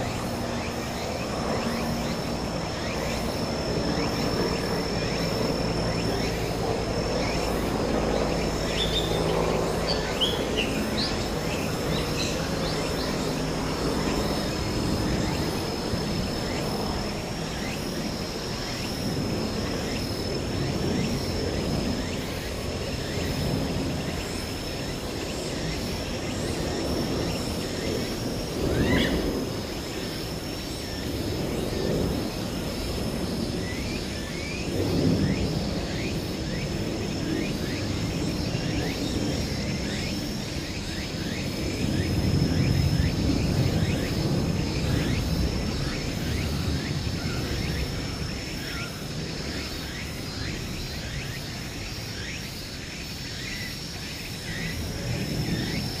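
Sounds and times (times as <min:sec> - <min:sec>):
steady high-pitched whine: 0:00.0 - 0:56.0.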